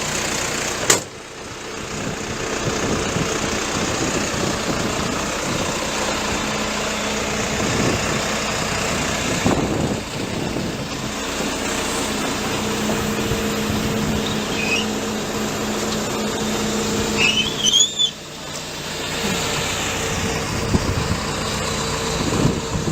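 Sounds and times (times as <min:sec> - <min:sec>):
diesel engine running: 0:00.0 - 0:22.9
short high squeaks: 0:14.2 - 0:15.0, 0:17.1 - 0:18.3.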